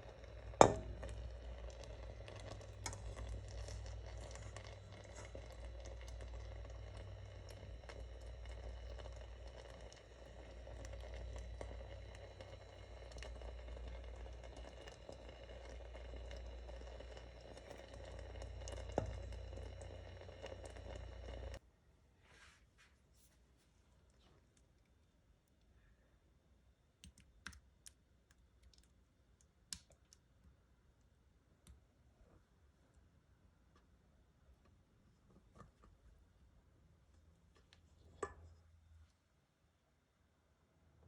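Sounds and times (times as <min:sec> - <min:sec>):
jam bubbling in a pot: 0:00.0 - 0:21.6, 0:37.2 - 0:39.0
low hum: 0:00.0 - 0:21.6.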